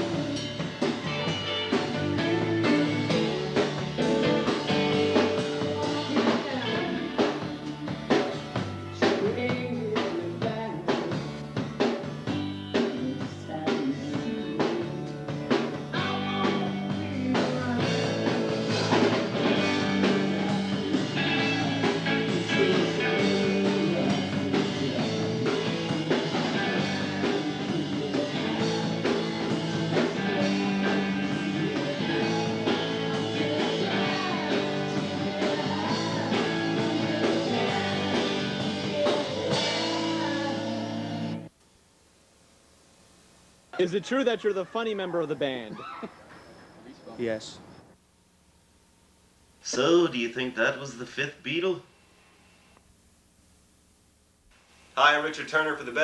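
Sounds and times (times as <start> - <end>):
rock band music: 0.0 - 41.5.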